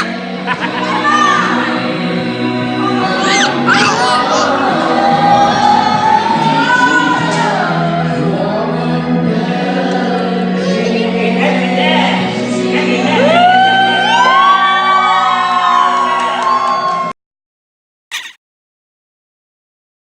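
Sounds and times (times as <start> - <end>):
person singing: 0.0 - 11.6.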